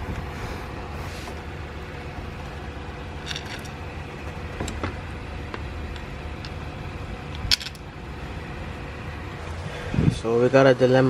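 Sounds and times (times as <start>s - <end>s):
low background hum: 0.0s - 11.0s.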